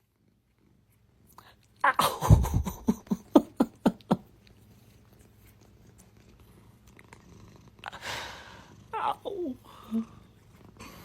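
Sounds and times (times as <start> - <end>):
cat purring: 2.2 - 11.0.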